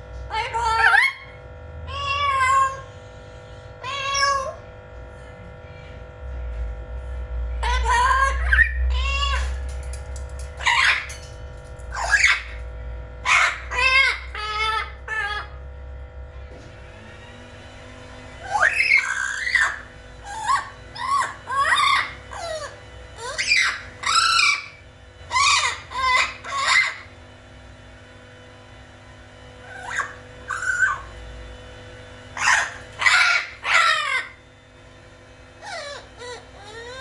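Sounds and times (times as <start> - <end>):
parrot squawking: 0.3 - 2.9, 3.8 - 4.6, 7.6 - 12.6, 13.2 - 15.6, 18.4 - 27.2, 29.6 - 31.2, 32.4 - 34.4, 35.6 - 37.0.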